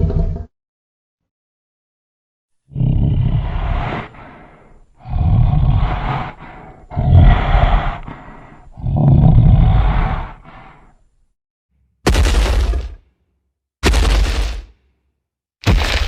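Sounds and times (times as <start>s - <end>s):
deep rough monster roars: 2.7s - 11.0s.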